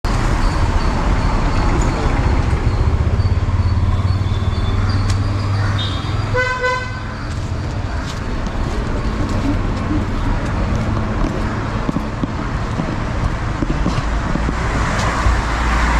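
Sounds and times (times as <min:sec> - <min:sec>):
traffic engines rumbling: 0:00.0 - 0:15.9
vehicle horn honk: 0:05.8 - 0:07.0.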